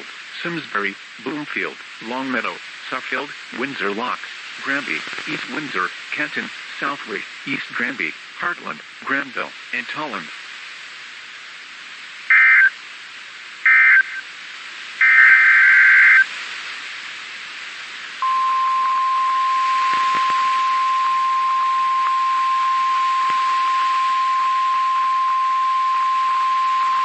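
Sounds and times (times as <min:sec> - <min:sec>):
radio hiss: 0:00.0 - 0:27.0
buzzy data bursts: 0:12.3 - 0:12.7, 0:13.7 - 0:14.2, 0:15.0 - 0:16.3
steady warning alarm tone: 0:15.0 - 0:16.2, 0:18.2 - 0:27.0.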